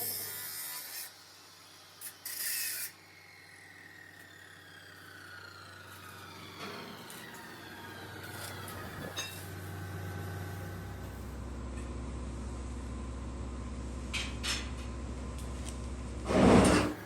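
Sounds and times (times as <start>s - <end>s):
low machine hum: 3.0s - 17.0s
short loud burst of noise: 16.2s - 17.0s.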